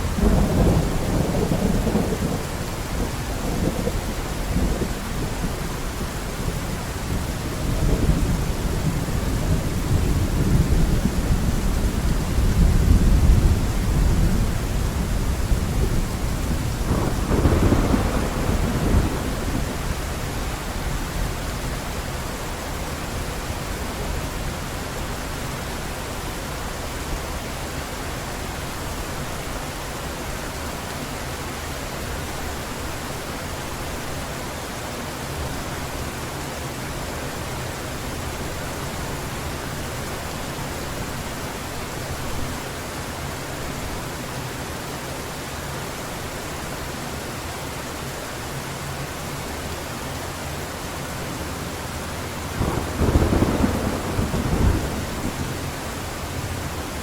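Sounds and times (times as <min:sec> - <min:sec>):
heavy rain: 0:00.0 - 0:57.0
thunder rumbling: 0:00.1 - 0:05.6, 0:07.7 - 0:20.2, 0:52.4 - 0:57.0.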